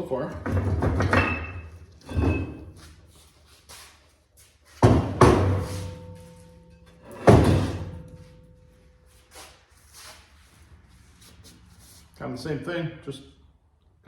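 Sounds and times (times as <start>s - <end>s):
heavy metal clanks with ringing: 5.0s - 9.0s.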